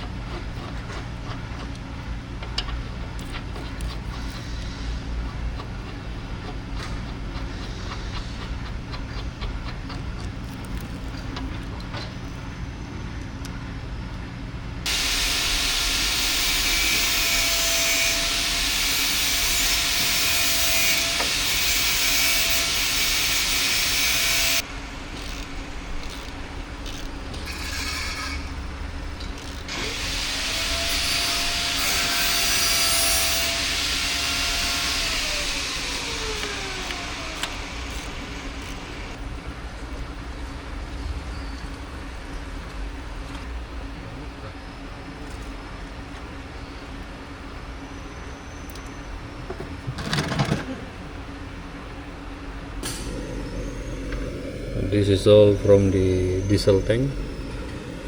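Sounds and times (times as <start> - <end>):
electric power tool grinding: 14.9 - 28.6, 29.2 - 39.1
low steady hum: 50.7 - 58.0.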